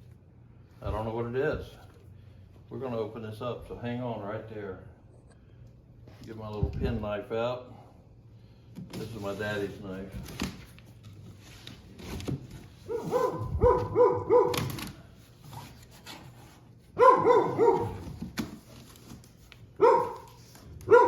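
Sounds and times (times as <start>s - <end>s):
dog barking: 12.9s - 14.8s, 17.0s - 18.1s, 19.8s - 21.0s.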